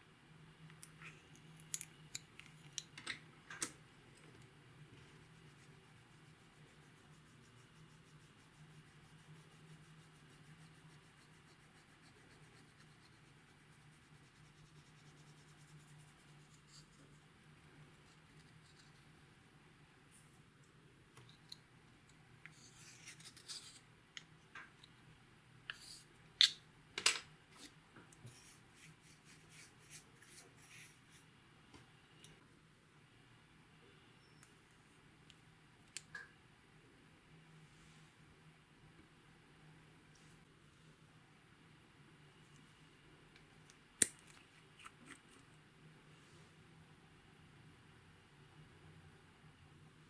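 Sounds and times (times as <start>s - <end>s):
faint steady hum: 0.0s - 50.0s.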